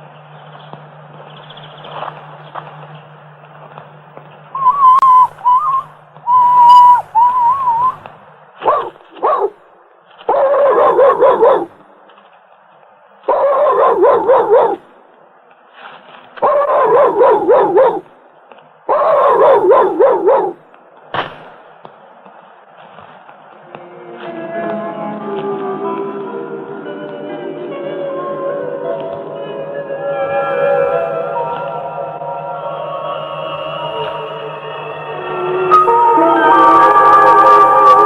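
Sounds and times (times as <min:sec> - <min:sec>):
dog whining: 0:04.6 - 0:08.0, 0:08.7 - 0:09.6, 0:10.3 - 0:11.7, 0:13.3 - 0:14.8, 0:16.4 - 0:18.0, 0:18.9 - 0:20.6
wavering whistle-like tones: 0:04.6 - 0:08.1, 0:23.7 - 0:38.0.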